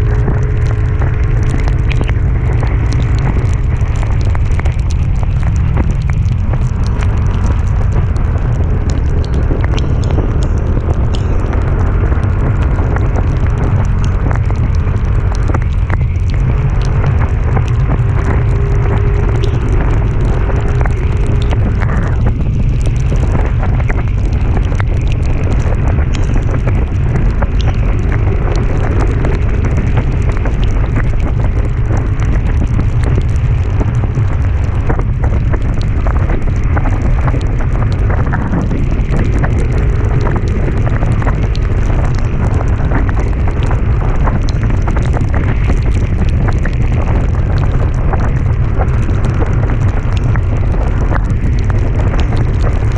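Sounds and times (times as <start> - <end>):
vehicle low rumble: 0.0 - 52.9
wind buffeting microphone: 0.0 - 52.9
sharp ticks: 0.1 - 52.9.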